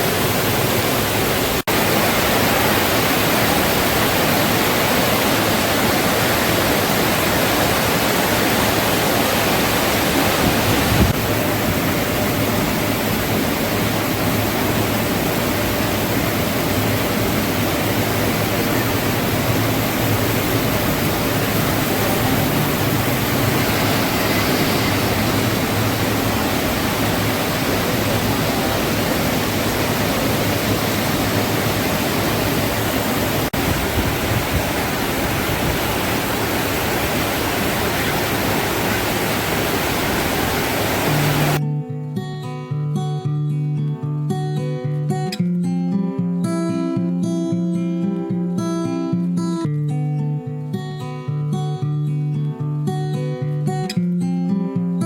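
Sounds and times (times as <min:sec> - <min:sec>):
heavy rain falling: 0:00.0 - 0:41.6.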